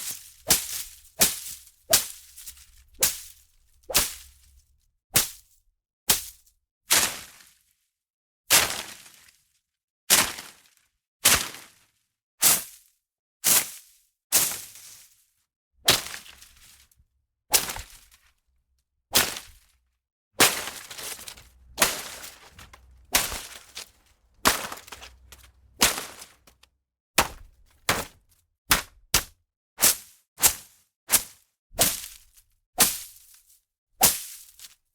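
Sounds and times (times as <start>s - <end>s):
leaves rustling: 0.0s - 3.4s, 20.4s - 26.6s
swishing hits into leaves: 0.0s - 4.4s, 17.5s - 18.1s, 19.2s - 19.6s, 20.4s - 26.6s, 34.0s - 34.7s.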